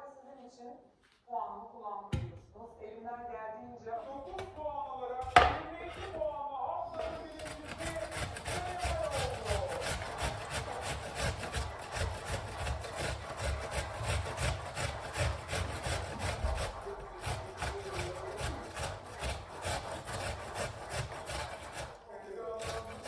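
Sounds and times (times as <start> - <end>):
rhythmic rubbing strokes: 6.9 - 23.0.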